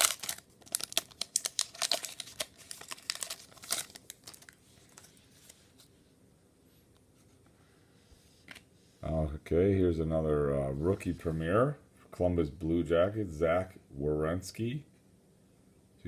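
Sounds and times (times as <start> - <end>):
wrapper crinkling and tearing: 0.0 - 5.6.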